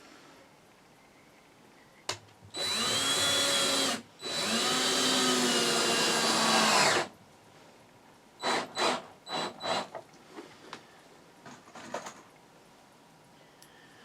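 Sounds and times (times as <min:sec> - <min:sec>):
power drill running: 0:02.6 - 0:07.1, 0:08.4 - 0:09.9.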